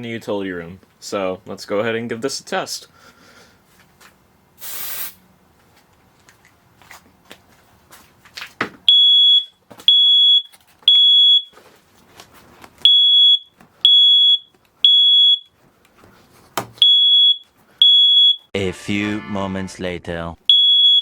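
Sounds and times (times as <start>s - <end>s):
smoke alarm beeping: 8.9s - 11.5s, 12.8s - 15.5s, 16.8s - 18.5s, 20.5s - 21.0s.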